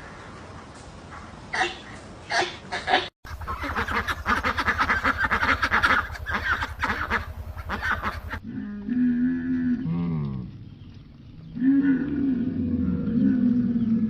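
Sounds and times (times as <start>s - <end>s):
flock of waterfowl calling: 3.3s - 8.4s
low steady hum: 3.3s - 14.0s.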